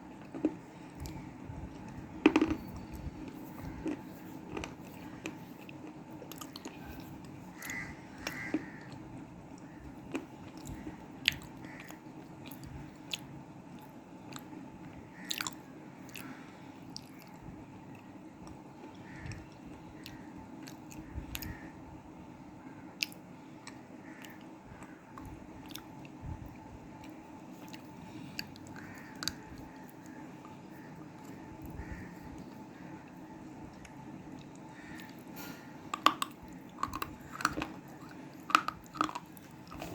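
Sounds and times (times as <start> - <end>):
background hum: 0.0 - 39.9.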